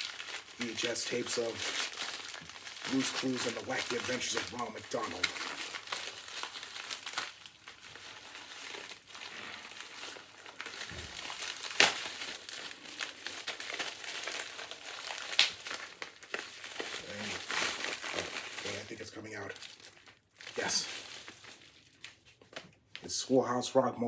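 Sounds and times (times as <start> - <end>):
packaging crinkling and rustling: 0.0 - 23.1
sharp plastic cracks: 10.8 - 18.5.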